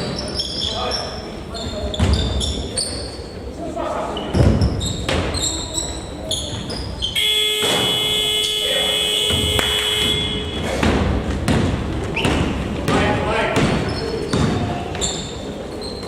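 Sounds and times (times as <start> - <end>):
shoe squeaks: 0.0 - 3.4, 4.1 - 10.9, 12.0 - 12.8, 13.7 - 16.0
ball bouncing on court: 1.9 - 2.5, 4.3 - 5.5, 6.4 - 8.2, 9.1 - 15.3
scoreboard buzzer tone: 7.2 - 10.7.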